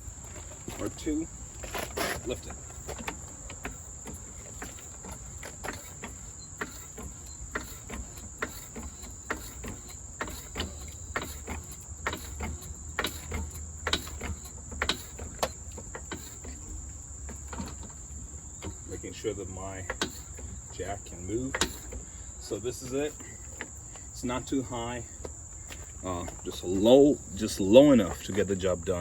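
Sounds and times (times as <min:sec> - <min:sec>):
floor jack clicking: 0:00.2 - 0:22.1.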